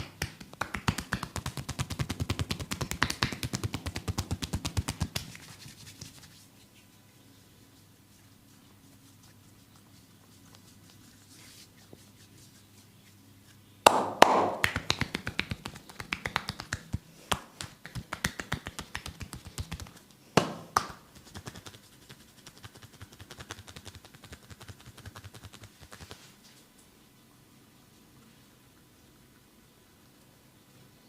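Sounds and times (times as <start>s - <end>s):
rapid hand taps: 0.0s - 5.6s, 13.9s - 21.8s, 22.4s - 26.1s
hands smacking skin: 0.0s - 6.4s, 13.9s - 26.2s.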